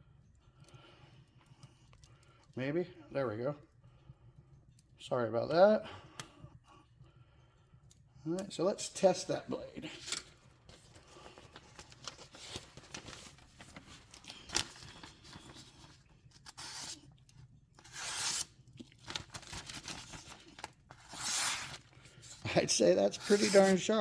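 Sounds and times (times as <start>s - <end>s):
knife slicing cuts: 16.5s - 17.0s, 17.8s - 18.6s, 21.0s - 21.8s.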